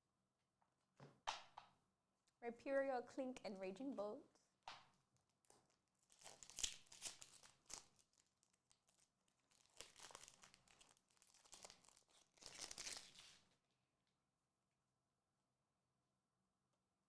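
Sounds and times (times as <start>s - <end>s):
foil wrapper crinkling: 5.8s - 13.4s.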